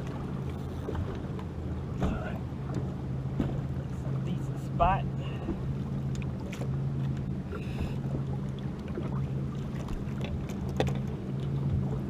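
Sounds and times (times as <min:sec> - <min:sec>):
light wind: 0:00.0 - 0:12.0
water noise: 0:00.0 - 0:12.0.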